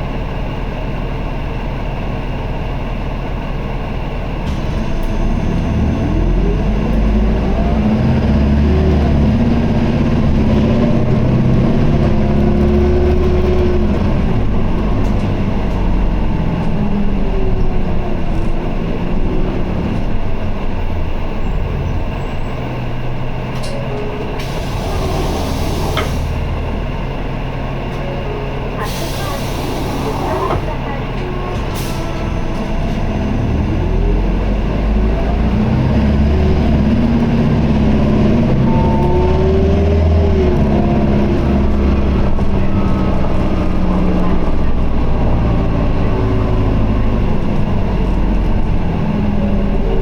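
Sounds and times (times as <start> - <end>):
bus diesel engine: 0.0 - 50.0
air hiss: 24.4 - 26.4.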